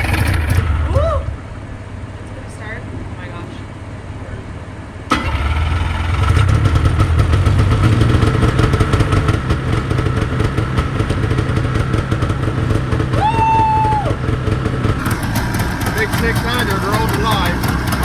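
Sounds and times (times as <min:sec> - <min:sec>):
snowmobile engine running: 0:00.0 - 0:00.8, 0:05.1 - 0:18.0.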